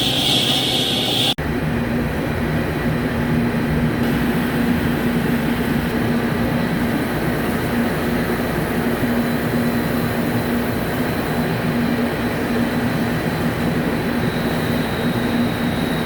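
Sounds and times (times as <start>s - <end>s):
cnc machine cutting metal: 0.0s - 1.3s.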